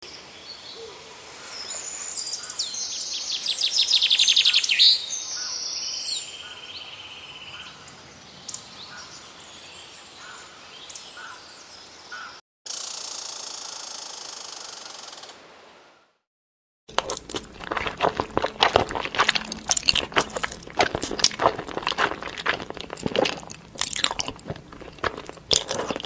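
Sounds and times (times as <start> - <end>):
birds singing: 1.5 - 12.4.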